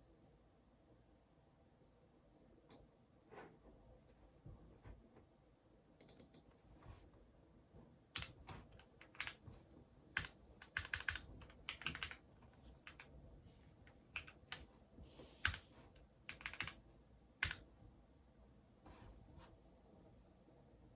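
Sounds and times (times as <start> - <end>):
mechanical keyboard typing: 8.2 - 9.4, 10.2 - 13.1, 13.9 - 14.7, 15.4 - 15.7, 16.3 - 16.8, 17.4 - 17.7.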